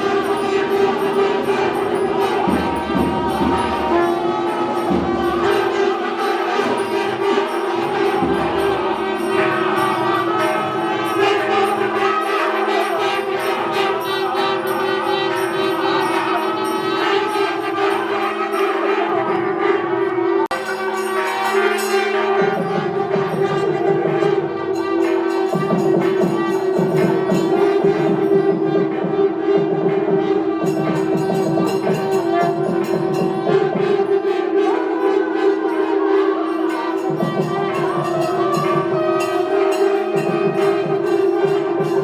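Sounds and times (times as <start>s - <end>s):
music with drone and melody: 0.0s - 42.0s.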